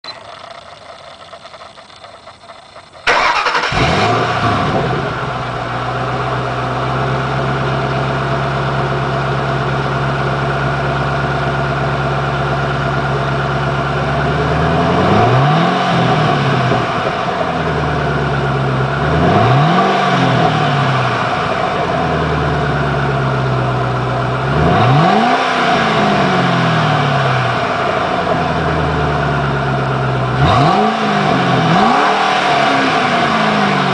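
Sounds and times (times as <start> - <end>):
car engine starting and idling: 0.0 - 33.9
engine revving: 3.0 - 9.0, 13.0 - 33.9.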